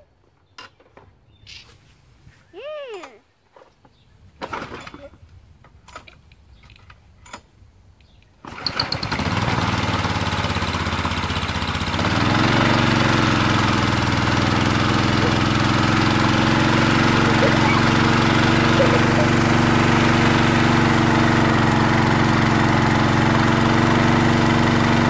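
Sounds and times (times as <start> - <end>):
recoil starter pull: 4.4 - 25.0
small engine running: 8.4 - 25.0.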